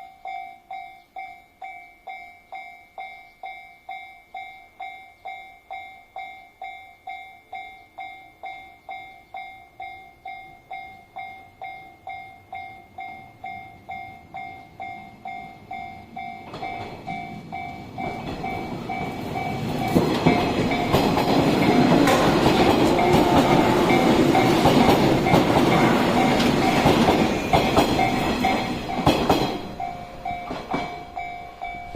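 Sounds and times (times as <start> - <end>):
level crossing alarm bell: 0.0 - 31.9
train running: 7.4 - 31.9
wheels clattering over rails: 16.2 - 31.9.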